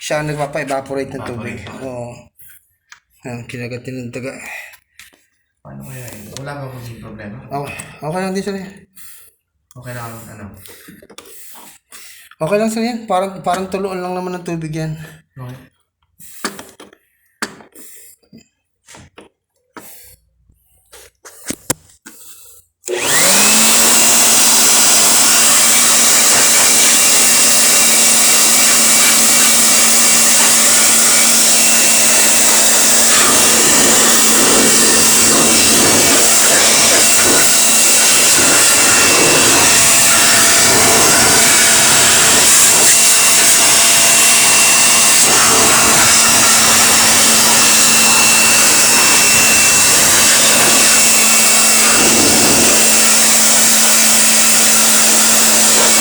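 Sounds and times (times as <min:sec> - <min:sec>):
electric cleaning machine whining: 0:22.9 - 0:56.0.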